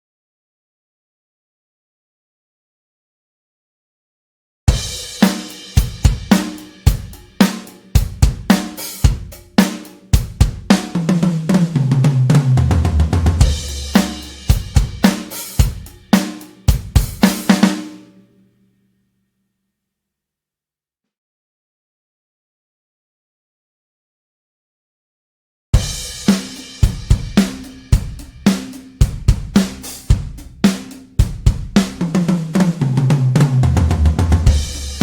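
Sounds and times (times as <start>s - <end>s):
acoustic drum kit groove: 4.7s - 18.2s, 25.8s - 35.0s.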